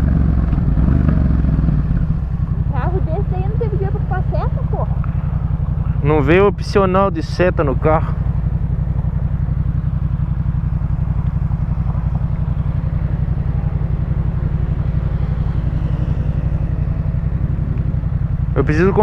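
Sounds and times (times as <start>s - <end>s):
motorcycle engine idling rumble: 0.0s - 19.0s.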